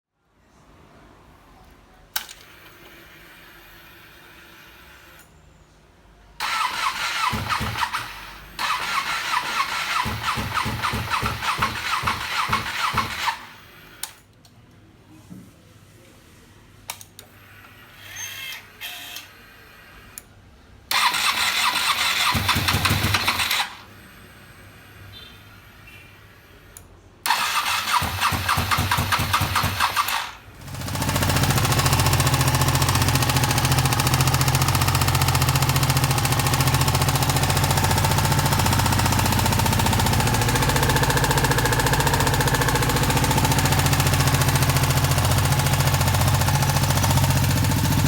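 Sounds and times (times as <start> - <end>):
motorcycle starter cranking engine: 6.4 - 14.2, 20.9 - 23.9, 27.2 - 48.0.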